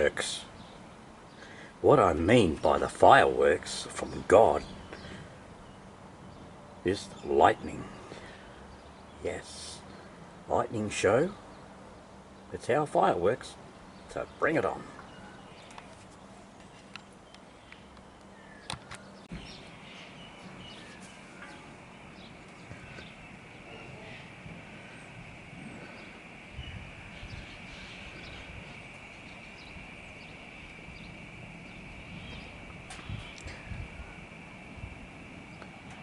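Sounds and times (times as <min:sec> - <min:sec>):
faint scattered clicks: 0:15.0 - 0:19.4
high insect drone: 0:19.3 - 0:36.0.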